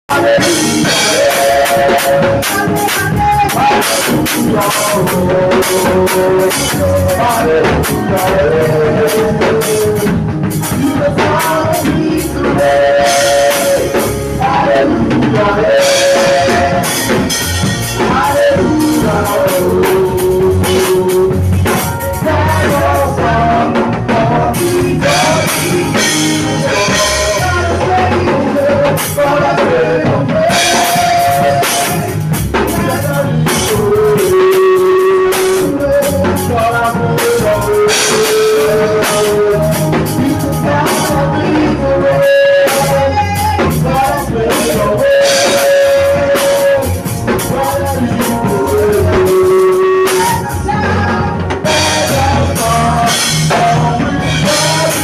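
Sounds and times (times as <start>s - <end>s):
band playing with singing: 0.0s - 55.0s.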